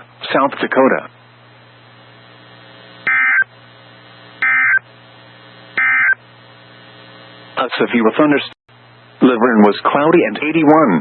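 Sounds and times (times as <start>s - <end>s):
low hum: 1.2s - 7.6s.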